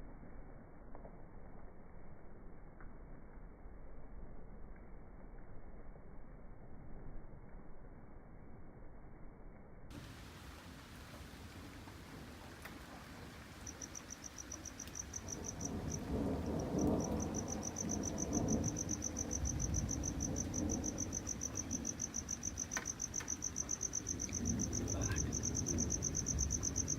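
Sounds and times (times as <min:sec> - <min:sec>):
distant thunder rumble: 0:09.9 - 0:26.9
cricket chirping: 0:12.4 - 0:26.9.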